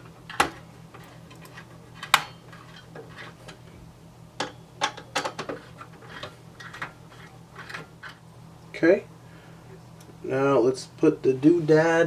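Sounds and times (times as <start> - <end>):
clicks of computer parts handled: 0.3 - 2.8.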